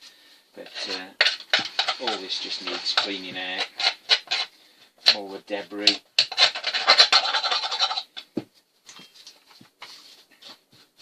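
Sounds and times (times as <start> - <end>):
scratchy scraping: 0.6 - 8.3.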